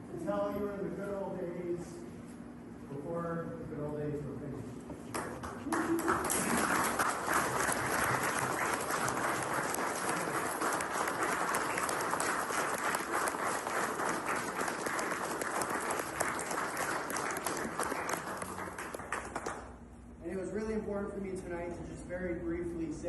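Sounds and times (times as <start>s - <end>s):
crowd applauding: 5.2s - 19.7s.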